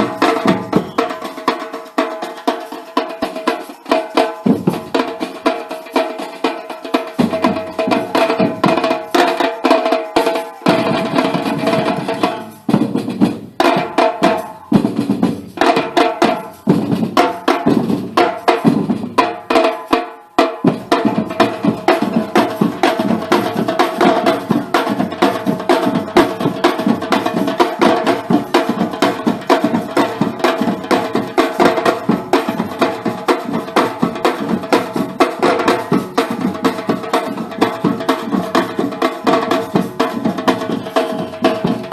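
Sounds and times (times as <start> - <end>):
fast drum percussion: 0.0 - 41.9.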